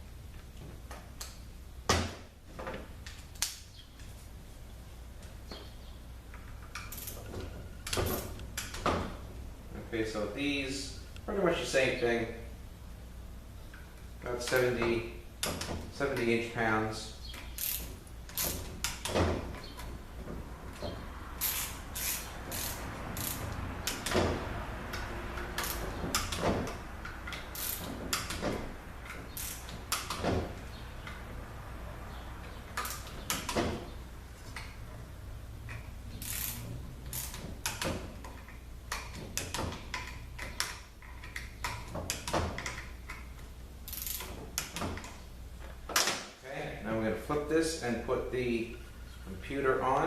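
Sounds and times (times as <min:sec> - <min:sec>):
ratchet wrench clicking: 0:06.6 - 0:07.2, 0:17.4 - 0:19.1, 0:21.4 - 0:24.2, 0:25.6 - 0:26.4, 0:27.2 - 0:28.4, 0:29.0 - 0:30.2, 0:32.8 - 0:33.5, 0:35.7 - 0:37.8, 0:43.9 - 0:44.8.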